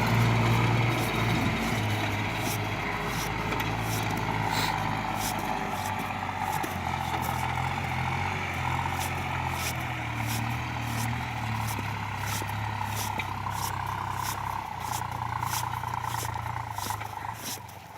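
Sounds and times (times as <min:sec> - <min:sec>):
constant whine: 0:00.0 - 0:17.8
tractor diesel engine running: 0:00.0 - 0:17.9
light regular ticks: 0:08.9 - 0:17.7.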